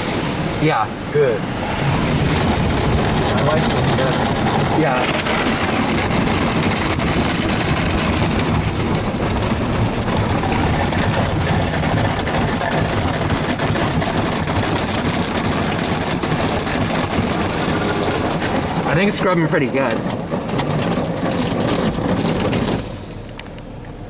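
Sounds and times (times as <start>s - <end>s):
car wash brushes spinning: 0.0s - 23.3s
water spraying on vehicle: 0.0s - 23.3s.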